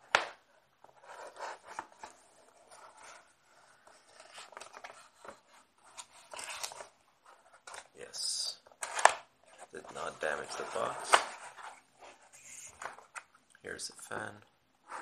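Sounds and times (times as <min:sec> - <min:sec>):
cardboard scraping and rubbing: 0:09.9 - 0:13.1.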